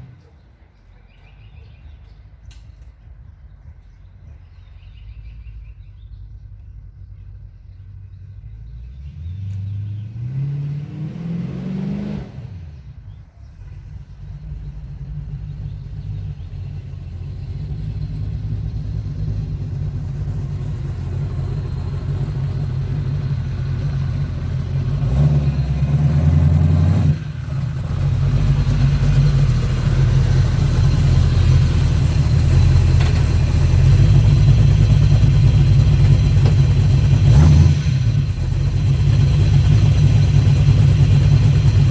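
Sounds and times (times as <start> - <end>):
pickup truck engine accelerating: 8.5 - 41.9.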